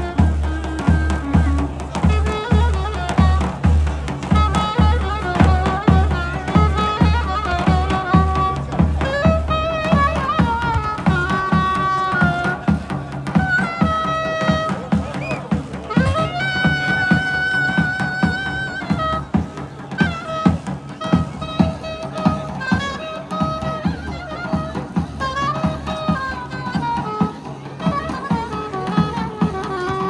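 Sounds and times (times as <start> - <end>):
bass drum beat: 0.0 - 12.7, 15.9 - 18.0
shrill reed melody: 15.9 - 19.2.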